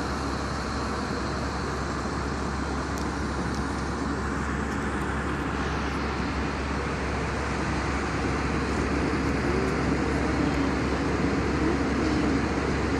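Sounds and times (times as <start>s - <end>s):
airliner cabin engine noise: 0.0s - 12.9s
faint wavering hum: 5.6s - 12.9s.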